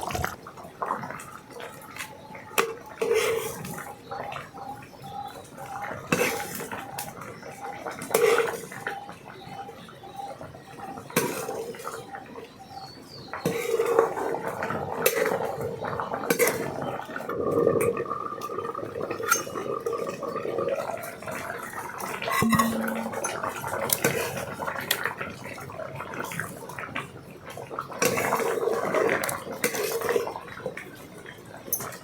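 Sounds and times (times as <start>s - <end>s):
metal dishes clinking: 22.4s - 24.1s.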